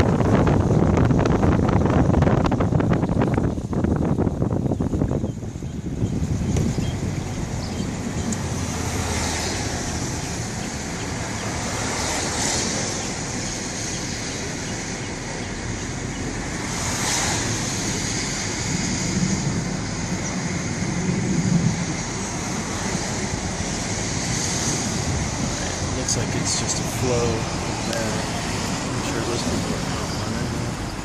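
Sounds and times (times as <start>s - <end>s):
wind gusting on microphone: 0.0s - 31.0s
floodwater rushing: 7.0s - 31.0s.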